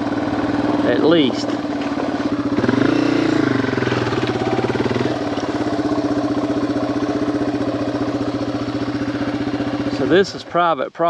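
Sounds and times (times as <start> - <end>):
motorcycle engine running low revs: 0.0 - 11.0.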